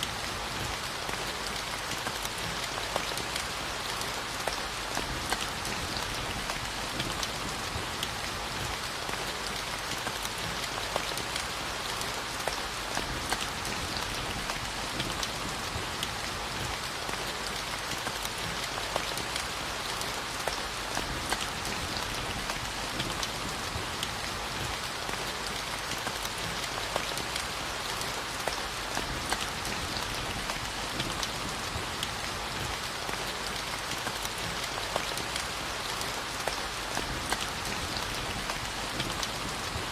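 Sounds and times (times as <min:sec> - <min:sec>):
steady rainfall: 0:00.0 - 0:39.9.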